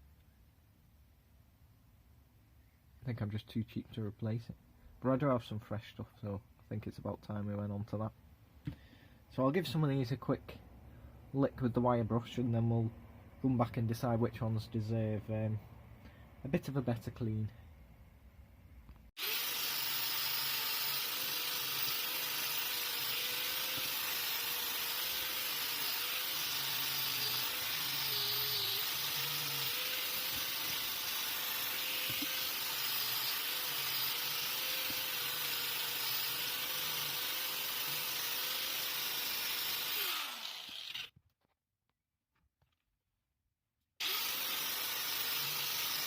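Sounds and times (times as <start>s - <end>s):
motor winding down: 19.2s - 41.1s, 44.0s - 46.0s.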